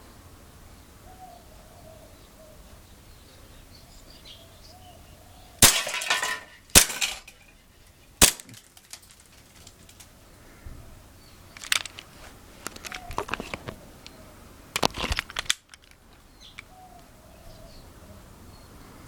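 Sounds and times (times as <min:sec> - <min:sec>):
airsoft pistol shots: 0:05.6 - 0:05.9, 0:08.2 - 0:08.5
target shattering clatter: 0:05.6 - 0:07.5, 0:08.2 - 0:09.2.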